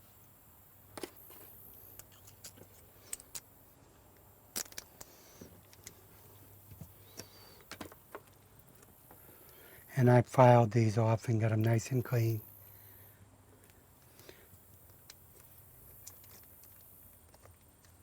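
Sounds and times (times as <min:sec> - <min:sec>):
small parts clicking and tapping: 0:01.0 - 0:03.5, 0:04.2 - 0:06.0, 0:13.6 - 0:18.0.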